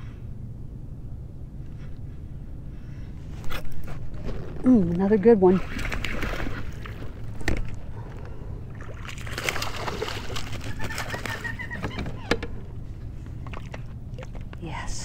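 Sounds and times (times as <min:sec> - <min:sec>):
water splashing and sloshing: 0:03.4 - 0:14.9.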